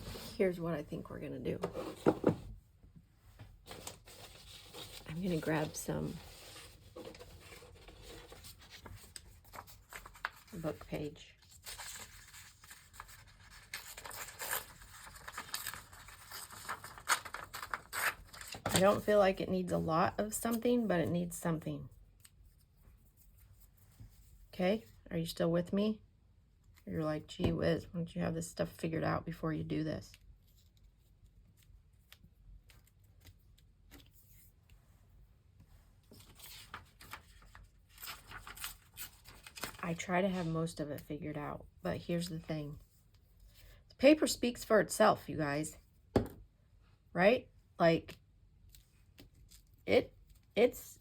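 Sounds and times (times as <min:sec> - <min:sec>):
book page rustling: 0:03.4 - 0:19.1, 0:36.0 - 0:40.6
paper rustling and tapping: 0:36.1 - 0:39.8.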